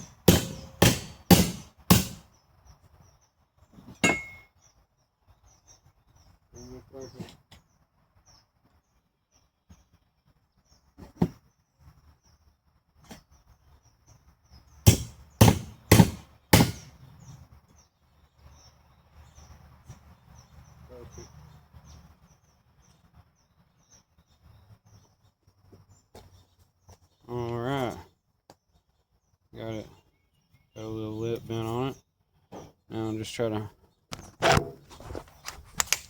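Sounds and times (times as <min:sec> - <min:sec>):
hammer blows on steel: 0:00.0 - 0:02.2, 0:14.9 - 0:16.9
shuffling and handling: 0:34.2 - 0:36.0.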